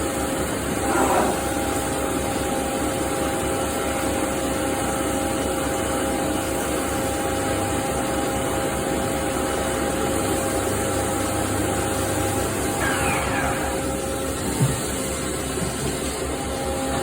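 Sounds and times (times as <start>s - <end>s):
machine humming and whining: 0.0s - 17.0s
tone falling in pitch: 12.8s - 14.0s.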